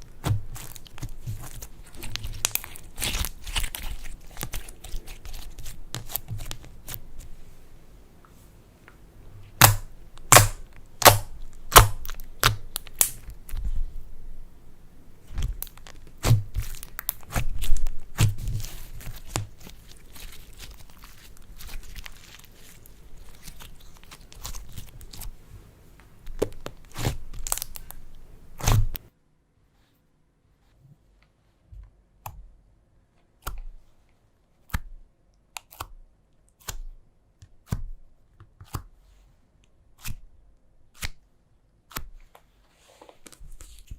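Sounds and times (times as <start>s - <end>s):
slime popping and crackling: 0.0s - 7.0s, 9.6s - 13.6s, 26.3s - 28.0s.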